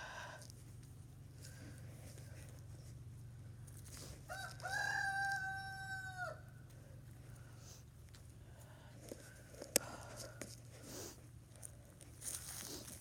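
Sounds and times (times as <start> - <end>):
rooster crowing: 4.3 - 6.5.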